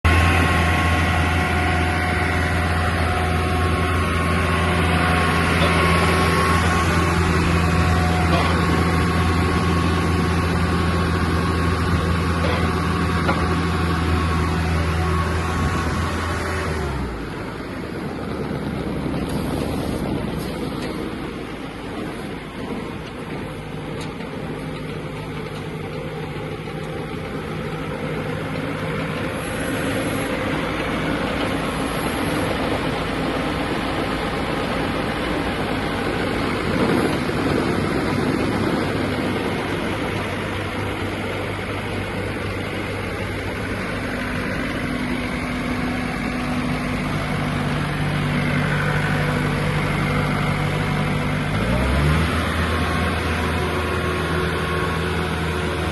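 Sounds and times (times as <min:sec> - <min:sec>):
diesel engine running: 0:00.0 - 0:55.9
broad rushing noise: 0:28.9 - 0:55.2.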